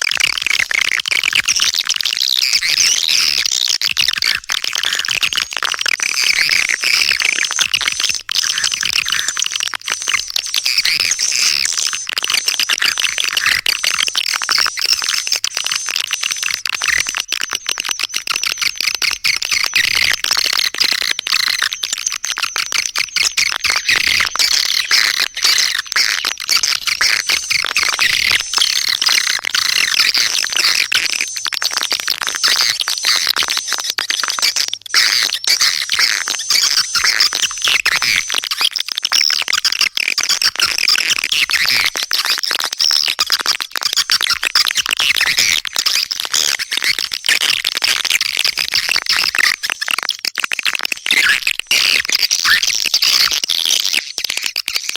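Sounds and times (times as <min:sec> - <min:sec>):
swiftlets chirping and twittering: 0:06.1 - 0:43.2.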